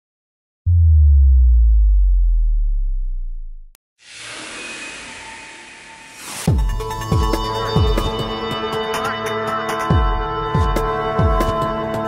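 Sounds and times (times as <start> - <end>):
deep sub-bass boom: 0.7 - 3.8.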